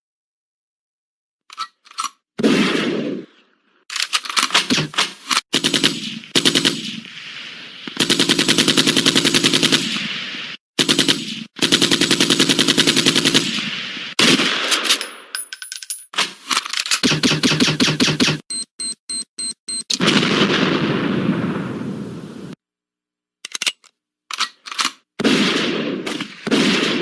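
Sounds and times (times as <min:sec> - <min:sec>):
machine-gun fire bursts: 0:04.6 - 0:07.1, 0:07.9 - 0:10.2, 0:10.8 - 0:15.0, 0:17.0 - 0:18.4, 0:20.0 - 0:20.9, 0:25.2 - 0:27.0.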